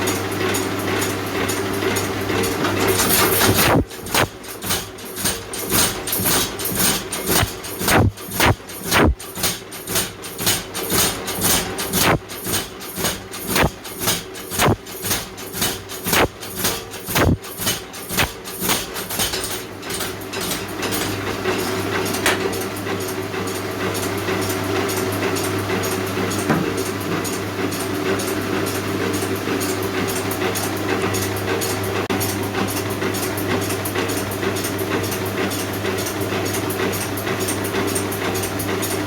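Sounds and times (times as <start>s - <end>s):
machine hum: 3.0s - 4.6s, 5.6s - 9.4s, 11.8s - 12.5s, 14.5s - 14.9s, 16.1s - 16.4s, 17.1s - 17.5s.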